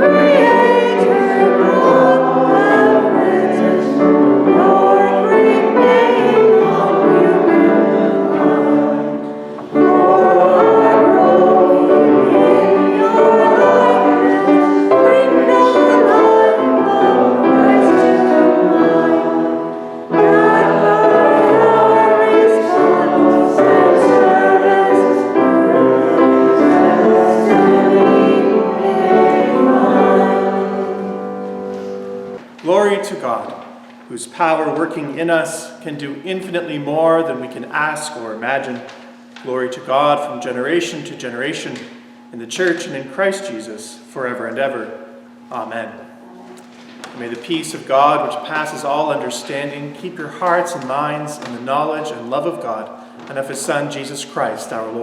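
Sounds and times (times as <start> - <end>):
choir singing a hymn: 0.0 - 32.4.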